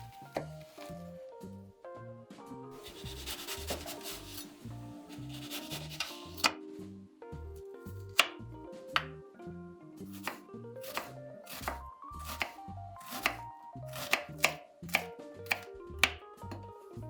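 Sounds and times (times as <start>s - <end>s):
knife chopping on cutting board: 0.0s - 0.9s, 2.8s - 6.6s, 8.0s - 9.1s, 10.1s - 16.7s
background music: 0.0s - 17.0s.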